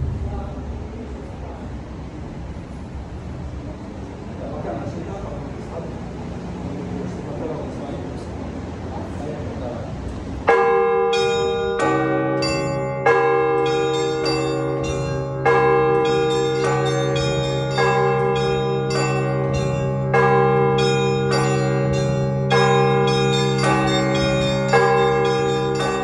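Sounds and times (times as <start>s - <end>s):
steady low hum: 0.0s - 10.5s
large church bell striking: 10.4s - 26.0s
small bells ringing quick patterns: 10.5s - 26.0s.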